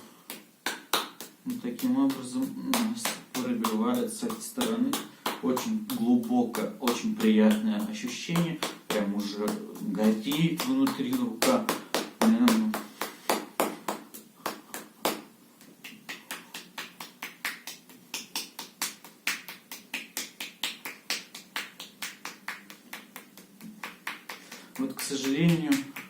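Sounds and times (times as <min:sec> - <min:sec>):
hand slapping an arm: 0:00.2 - 0:26.0.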